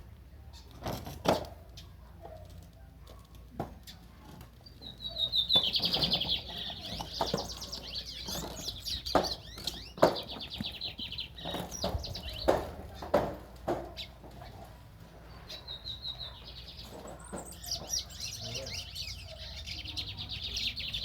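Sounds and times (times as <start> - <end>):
birds twittering song: 0.1 - 21.0
sharp knocks: 8.3 - 10.6.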